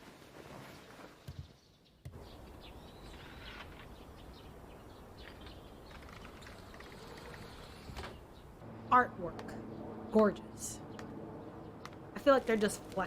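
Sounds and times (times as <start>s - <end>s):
birds chirping: 1.4s - 13.0s.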